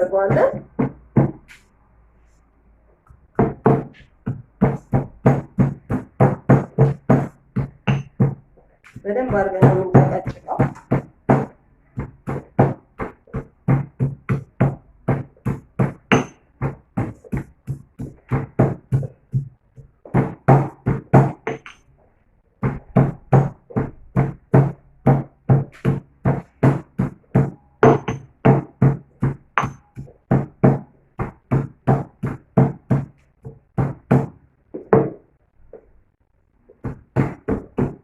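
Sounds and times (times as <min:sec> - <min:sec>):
pestle pounding in mortar: 0:00.0 - 0:01.6, 0:03.3 - 0:21.9, 0:22.6 - 0:35.2, 0:36.7 - 0:38.0.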